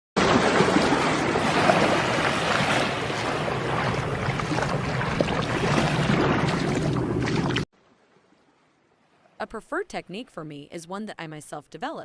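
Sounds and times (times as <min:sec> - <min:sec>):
ocean waves rushing: 0:00.2 - 0:07.7
wind: 0:00.2 - 0:10.8.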